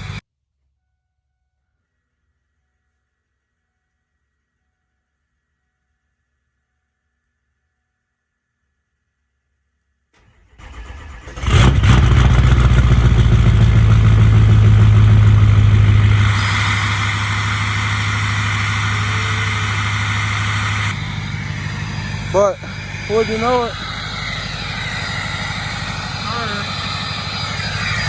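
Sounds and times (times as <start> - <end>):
diesel engine cranking: 0.0 - 0.2, 10.2 - 28.0
diesel engine idling: 0.0 - 0.2, 10.3 - 28.0.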